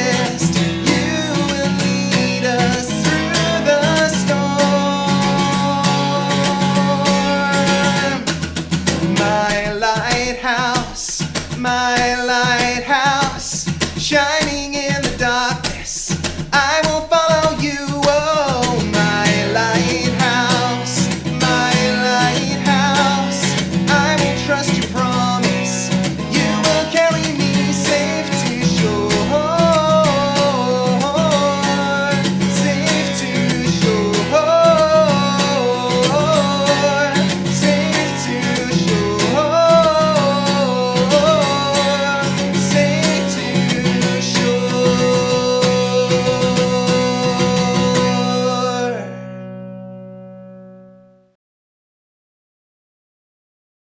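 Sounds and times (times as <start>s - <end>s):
person singing: 0.0s - 49.4s
song with guitar and drums: 0.0s - 51.1s.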